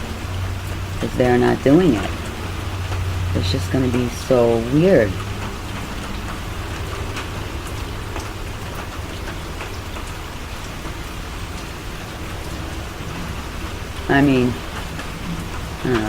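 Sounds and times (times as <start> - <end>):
steady rain: 0.0 - 16.0.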